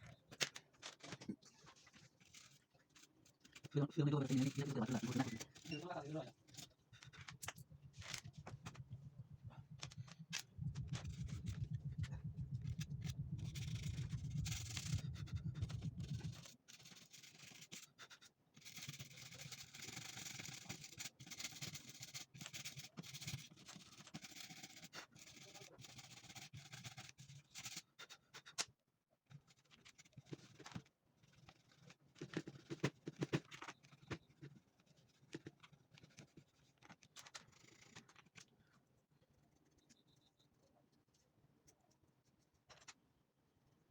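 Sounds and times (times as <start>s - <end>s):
cloth rubbing over keyboard keys: 0.9s - 26.0s
low hum: 6.5s - 16.5s.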